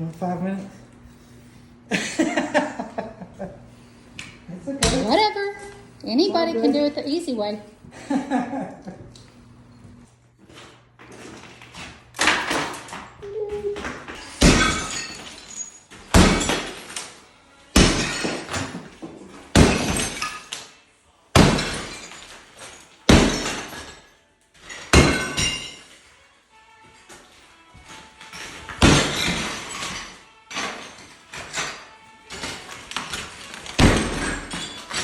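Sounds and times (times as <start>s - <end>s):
breaking tile clattering: 11.2s - 13.2s, 13.8s - 17.2s, 17.8s - 20.7s, 21.4s - 26.0s, 28.2s - 35.0s.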